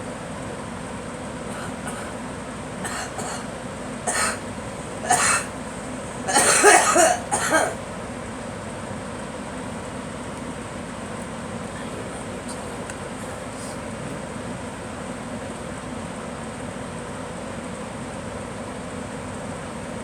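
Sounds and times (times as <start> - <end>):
steady background hum: 0.0 - 20.0
girl coughing: 1.5 - 2.2, 2.8 - 3.5, 4.1 - 5.6, 6.2 - 7.8.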